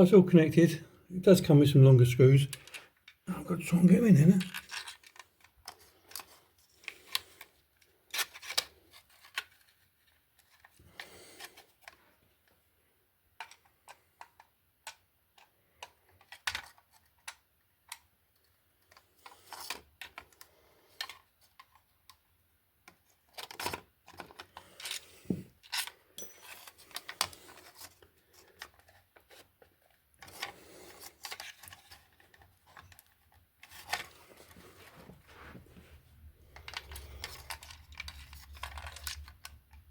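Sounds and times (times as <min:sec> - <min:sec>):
plastic faceplate clicks and scraping: 0:04.2 - 0:12.0, 0:13.4 - 0:22.2, 0:22.8 - 0:26.0, 0:26.8 - 0:34.6, 0:36.4 - 0:39.9.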